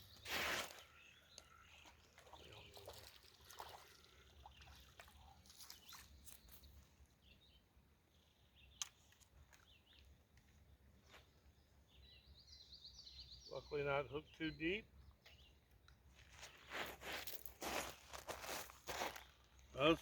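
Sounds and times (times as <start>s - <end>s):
bird chirps: 11.9s - 15.9s.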